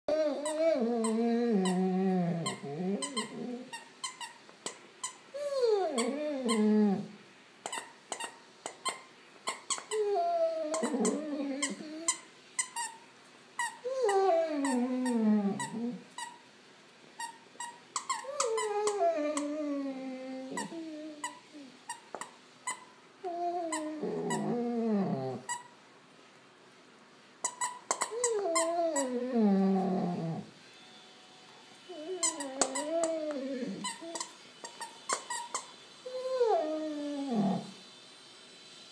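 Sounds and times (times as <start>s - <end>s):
squeaky toy squealing: 0.1s - 6.9s, 7.7s - 13.0s, 17.2s - 19.6s, 27.4s - 29.3s, 31.9s - 36.8s
quick short squeaks and clicks: 34.0s - 35.8s.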